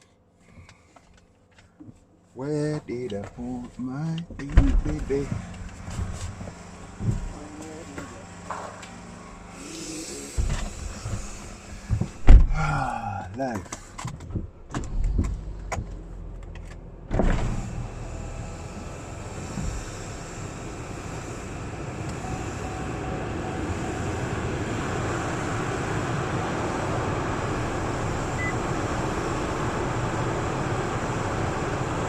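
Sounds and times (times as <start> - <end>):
car engine and road noise: 0.0 - 32.0
loud thump: 4.6 - 6.2, 11.9 - 12.7, 17.1 - 17.7.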